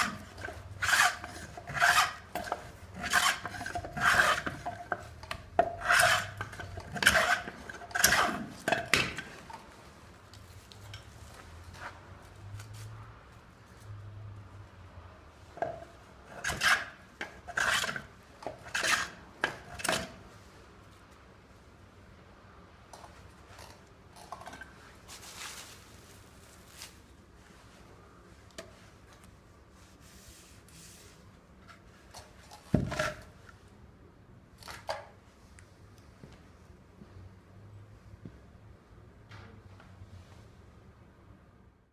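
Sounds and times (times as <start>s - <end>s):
plane rasping on log: 0.0s - 5.0s, 5.6s - 8.5s, 16.3s - 20.0s.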